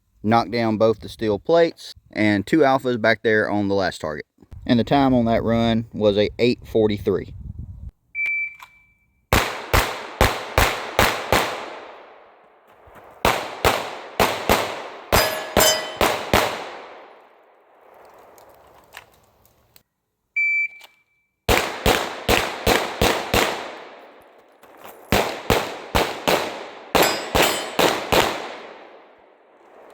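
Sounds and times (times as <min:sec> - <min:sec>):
shot timer beep: 0:08.2 - 0:09.0, 0:20.4 - 0:21.1
pistol shots in quick strings: 0:13.2 - 0:17.0, 0:25.1 - 0:28.8
bullet ringing on steel plate: 0:15.1 - 0:16.3, 0:27.0 - 0:28.0.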